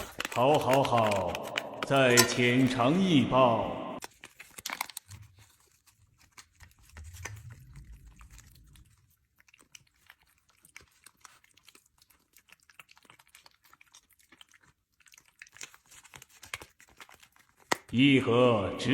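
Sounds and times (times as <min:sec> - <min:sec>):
cat chewing and licking: 0:00.0 - 0:02.8, 0:04.0 - 0:18.0
low rumble: 0:07.0 - 0:09.1.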